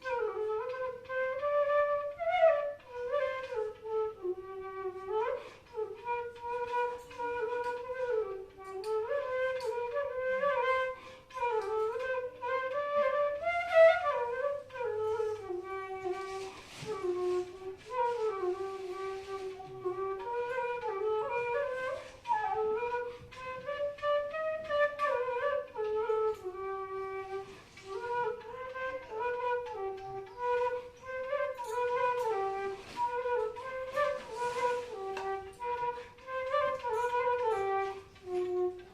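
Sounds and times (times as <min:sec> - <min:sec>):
bamboo flute solo melody: 0:00.0 - 0:38.9
flute player breathing: 0:05.4 - 0:05.7, 0:10.9 - 0:11.4, 0:16.2 - 0:17.4, 0:21.9 - 0:22.3, 0:23.0 - 0:23.5, 0:27.4 - 0:28.1, 0:33.9 - 0:36.3.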